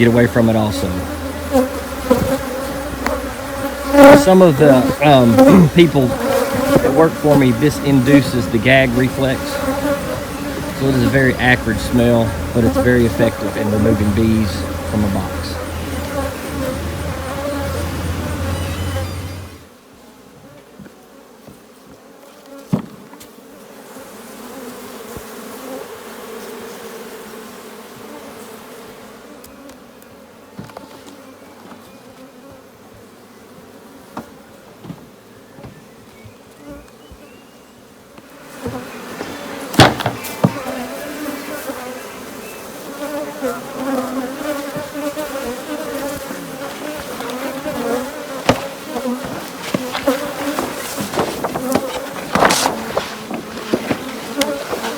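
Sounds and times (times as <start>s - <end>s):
swarm of bees buzzing: 0.0s - 54.9s
sharp knocks: 38.6s - 40.7s, 48.4s - 54.9s.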